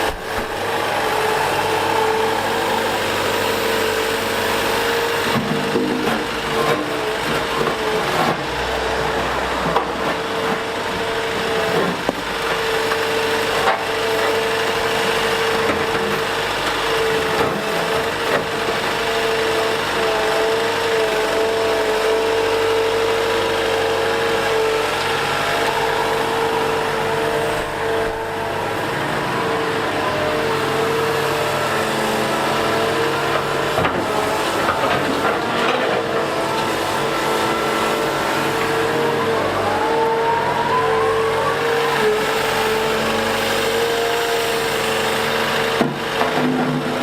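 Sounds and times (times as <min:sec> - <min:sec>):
excavator engine whining under load: 0:00.0 - 0:47.0
bucket scraping and breaking asphalt: 0:05.3 - 0:14.4.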